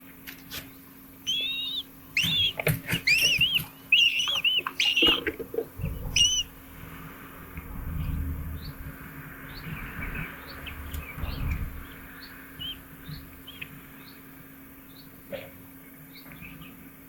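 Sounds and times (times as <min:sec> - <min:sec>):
bird calling: 0:01.1 - 0:06.6, 0:09.5 - 0:15.3
low rumble: 0:05.7 - 0:14.8.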